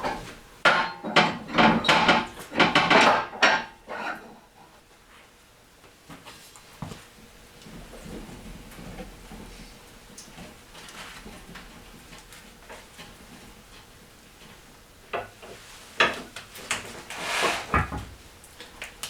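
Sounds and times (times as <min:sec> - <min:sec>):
metal scrape: 0:17.1 - 0:17.8.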